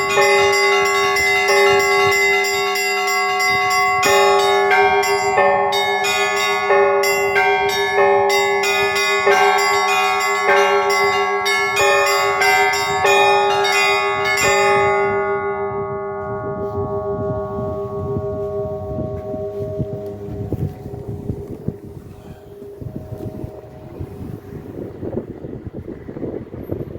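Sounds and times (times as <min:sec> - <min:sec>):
church bells ringing: 0:00.0 - 0:26.2
low rumble: 0:09.6 - 0:26.9.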